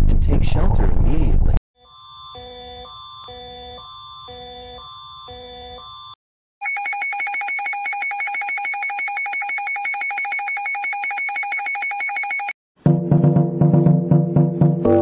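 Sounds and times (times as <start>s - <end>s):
warbling emergency alert tone: 1.8s - 12.6s.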